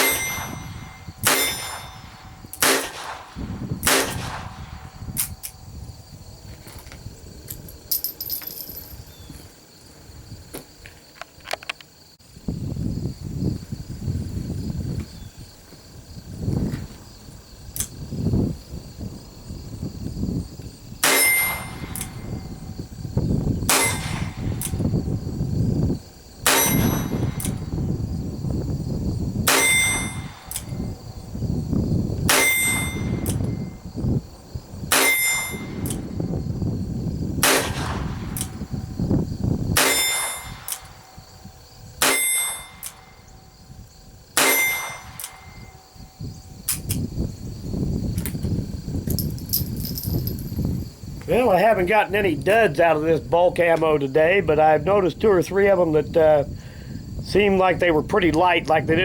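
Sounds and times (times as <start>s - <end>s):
metallic ring: 0.0s - 2.2s, 7.9s - 9.0s, 21.1s - 22.4s, 29.6s - 30.3s, 32.4s - 33.2s, 35.0s - 35.8s, 42.1s - 43.2s, 44.5s - 45.9s, 49.1s - 50.6s
revolver gunshots: 1.2s - 2.0s, 2.6s - 4.8s, 37.4s - 38.4s.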